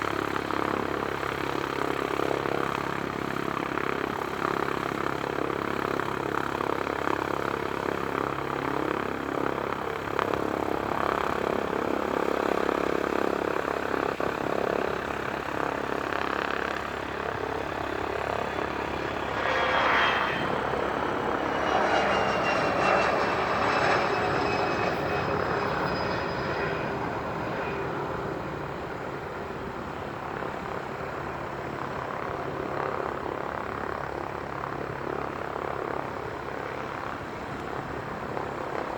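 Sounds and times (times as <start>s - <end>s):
jet engines roaring: 6.6s - 32.0s
high whine sliding down: 18.5s - 26.8s.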